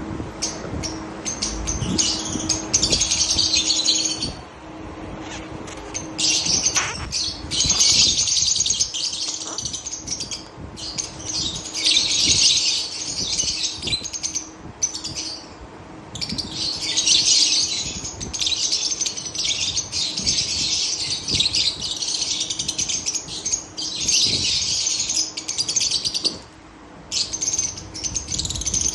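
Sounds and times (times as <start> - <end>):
budgerigars chattering and warbling: 5.2 - 15.5.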